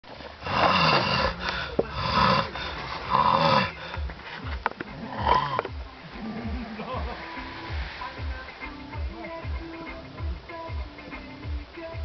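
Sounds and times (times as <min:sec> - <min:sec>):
loud rasping snoring: 0:00.4 - 0:04.1, 0:04.9 - 0:06.8
snuffling breaths: 0:00.4 - 0:06.8.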